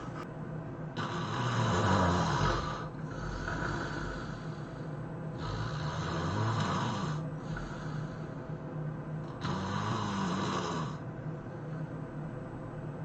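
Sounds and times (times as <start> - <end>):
person snoring: 1.0 - 8.3, 9.3 - 11.0.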